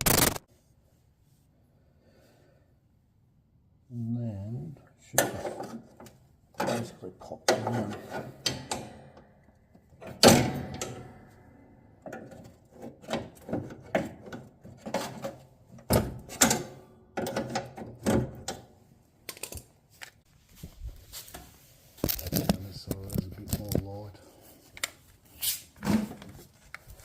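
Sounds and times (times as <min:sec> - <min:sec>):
metal knocks and scrapes: 0:06.6 - 0:09.2.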